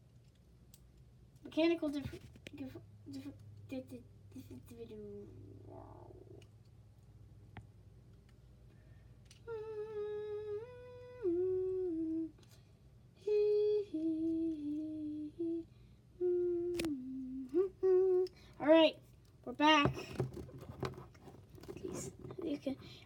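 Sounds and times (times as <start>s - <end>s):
person humming a tune: 9.4s - 12.5s, 13.2s - 18.5s.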